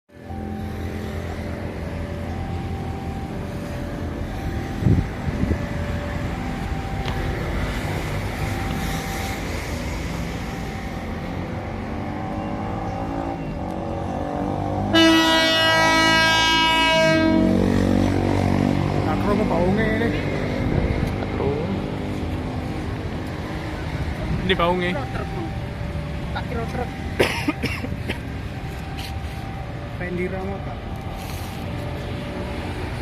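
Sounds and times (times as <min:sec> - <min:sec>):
diesel engine rumble: 0:00.1 - 0:33.0
locomotive horn chord: 0:14.8 - 0:18.7.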